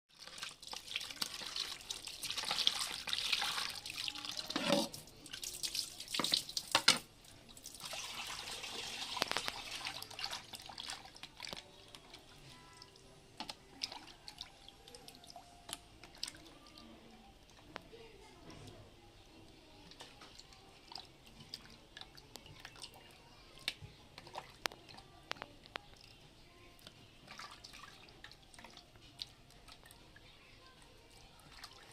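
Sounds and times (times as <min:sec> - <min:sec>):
water running and splashing: 0:00.1 - 0:13.0
water drips: 0:00.2 - 0:31.9.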